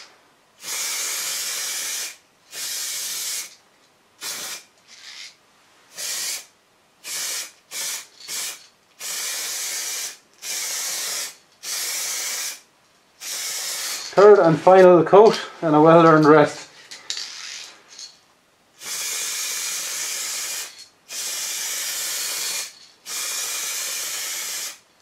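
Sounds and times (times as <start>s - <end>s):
spray-paint can hissing: 0.6s - 3.6s, 4.2s - 14.2s, 18.8s - 24.9s.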